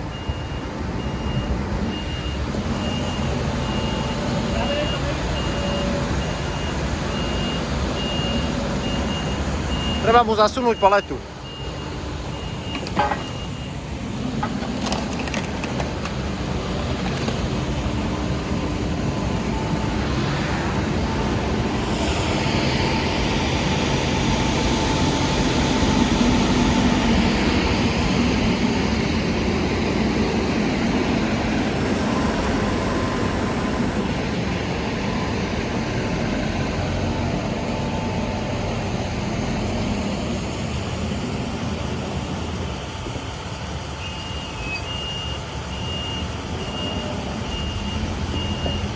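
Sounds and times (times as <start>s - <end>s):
diesel engine running under load: 0.0s - 48.9s.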